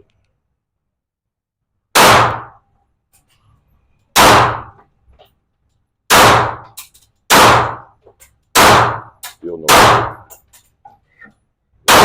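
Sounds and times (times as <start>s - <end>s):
handgun shots echoing: 2.0s - 2.6s, 4.2s - 4.8s, 6.1s - 7.9s, 8.5s - 10.4s.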